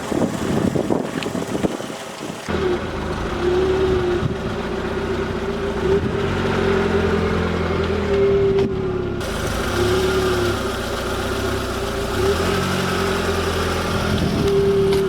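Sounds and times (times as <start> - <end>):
wind rustling: 0.0 - 6.6
car engine rumbling: 0.0 - 15.0
mid-pitched engine whine: 0.0 - 15.0.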